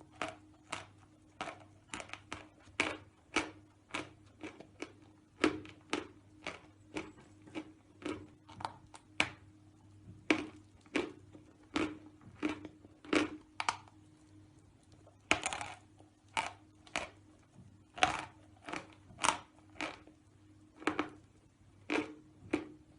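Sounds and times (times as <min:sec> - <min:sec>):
chalk being chewed: 0:00.0 - 0:09.0
faint steady hum: 0:00.0 - 0:22.9.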